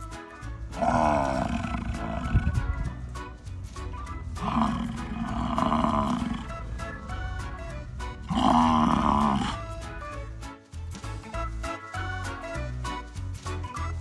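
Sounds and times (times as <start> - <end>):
background music: 0.0 - 14.0
animal calling: 0.8 - 10.2.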